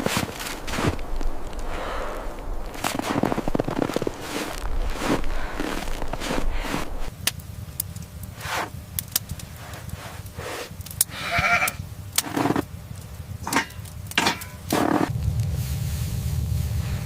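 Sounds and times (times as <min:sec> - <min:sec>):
scraping sounds: 0:00.0 - 0:01.6, 0:02.7 - 0:07.1
low rumble: 0:00.0 - 0:10.4, 0:15.1 - 0:17.0
animal bleat: 0:11.1 - 0:11.8.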